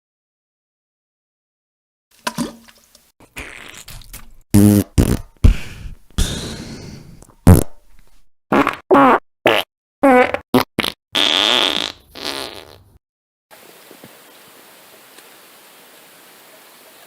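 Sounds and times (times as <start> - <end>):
fart sound effects: 3.3 - 5.6, 7.5 - 7.8, 8.5 - 13.0.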